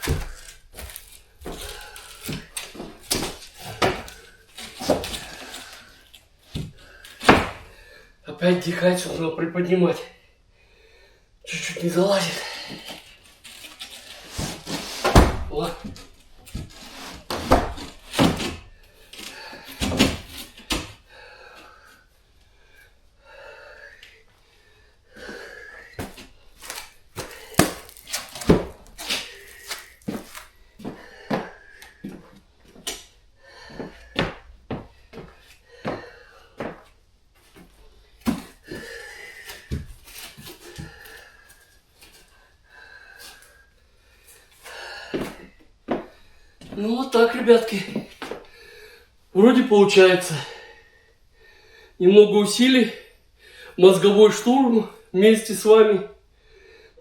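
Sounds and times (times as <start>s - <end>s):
heavy wooden knocks and thuds: 6.6s - 7.7s, 15.0s - 16.0s
man breathing hard: 10.2s - 11.4s, 20.8s - 28.1s, 29.2s - 36.9s, 37.6s - 46.7s, 48.2s - 49.2s, 50.4s - 52.0s, 53.1s - 53.8s, 56.2s - 57.0s.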